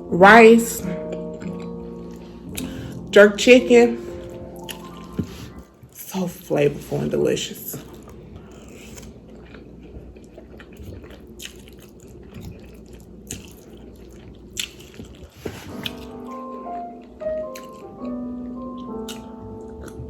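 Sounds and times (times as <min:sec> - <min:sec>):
background music: 0:00.0 - 0:07.8, 0:15.7 - 0:20.0
chewing and mouth smacking: 0:01.0 - 0:02.8, 0:04.1 - 0:06.0, 0:07.8 - 0:20.0.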